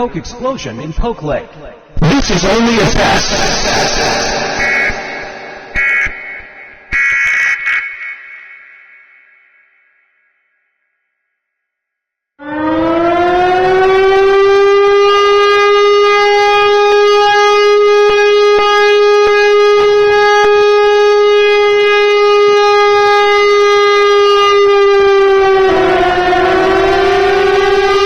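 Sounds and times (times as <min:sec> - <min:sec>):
siren: 0:02.4 - 0:10.5, 0:12.4 - 0:28.0.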